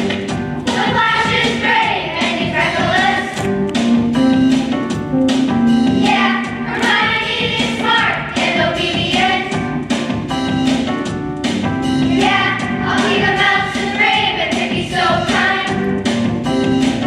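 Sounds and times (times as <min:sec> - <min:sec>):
accompaniment with steady beat: 0:00.0 - 0:17.0
children singing in unison: 0:00.7 - 0:03.4, 0:06.0 - 0:09.6, 0:12.2 - 0:15.8.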